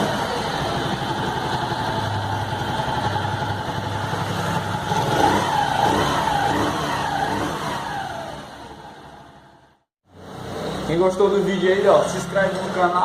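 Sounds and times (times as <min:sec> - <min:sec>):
motorcycle engine idling and revving: 0:00.0 - 0:13.0.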